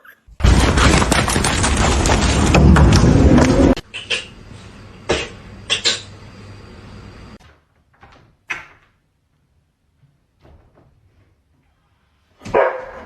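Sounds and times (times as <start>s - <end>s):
steady low hum: 0.4s - 7.4s.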